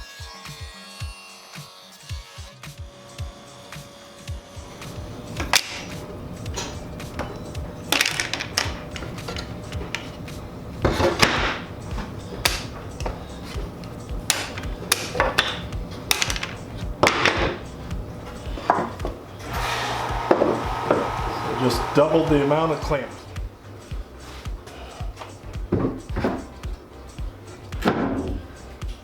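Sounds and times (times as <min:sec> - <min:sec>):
metal clamps clacking on wood: 0:05.4 - 0:10.2, 0:10.8 - 0:17.6.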